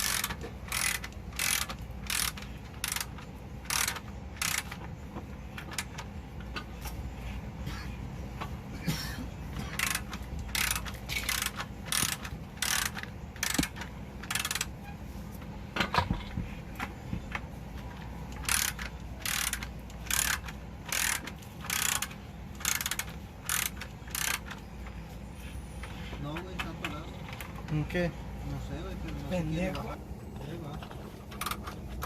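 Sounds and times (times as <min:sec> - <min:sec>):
ratchet wrench clicking: 0:00.0 - 0:04.9, 0:05.6 - 0:06.6, 0:09.6 - 0:14.8, 0:17.3 - 0:25.0, 0:31.3 - 0:32.0.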